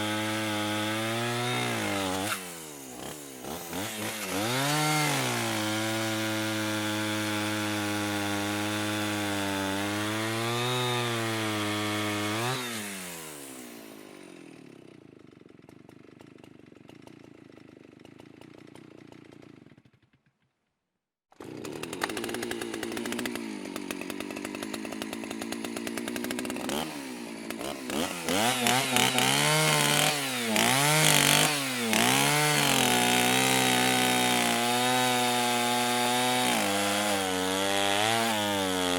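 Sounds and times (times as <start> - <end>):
chainsaw revving: 0.0 - 20.0, 21.3 - 38.9
chainsaw idling: 0.0 - 20.1, 21.3 - 38.9.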